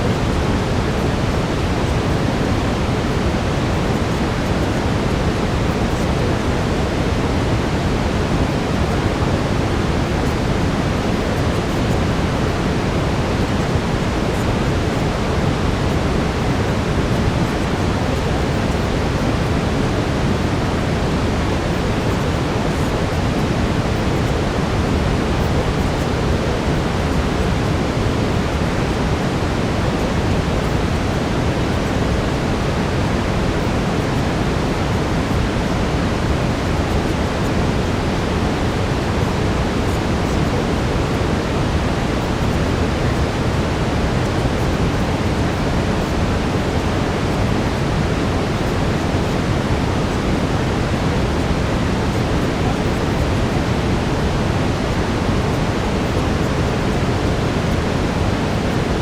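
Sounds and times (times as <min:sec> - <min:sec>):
brown noise hiss: 0:00.0 - 0:59.0.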